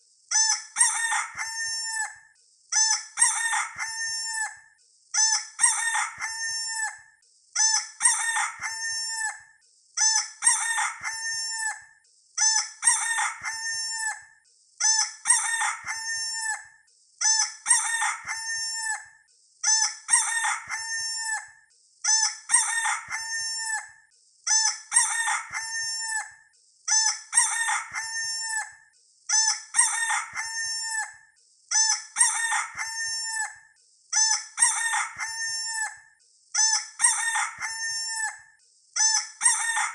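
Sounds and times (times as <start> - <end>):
rooster crowing: 0.8 - 2.2, 3.2 - 4.6, 5.6 - 7.0, 8.0 - 9.4, 10.4 - 11.8, 12.8 - 14.2, 15.3 - 16.7, 17.7 - 19.1, 20.1 - 21.5, 22.5 - 24.0, 24.9 - 26.3, 27.3 - 28.8, 29.8 - 31.2, 32.2 - 33.6, 34.6 - 36.0, 37.0 - 38.4, 39.4 - 39.9.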